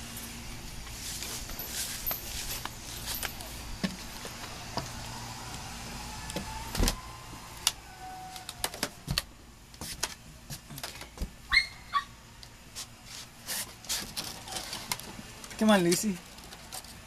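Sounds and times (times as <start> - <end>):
steady hiss: 0.0 - 11.5.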